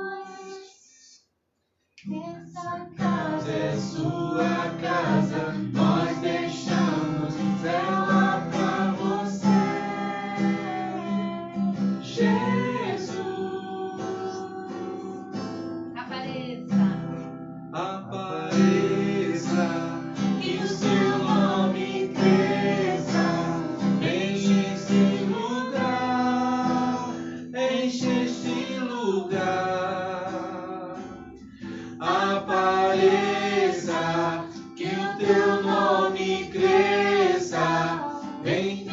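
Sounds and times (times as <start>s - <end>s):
woman singing a worship song: 0.0s - 1.1s, 2.0s - 17.2s, 20.3s - 24.0s, 32.0s - 38.9s
strummed acoustic guitar: 2.1s - 38.9s.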